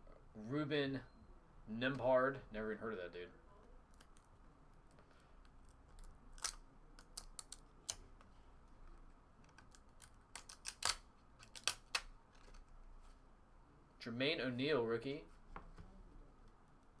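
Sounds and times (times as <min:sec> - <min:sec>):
cards clicking and snapping: 0:03.9 - 0:08.3, 0:09.4 - 0:12.6.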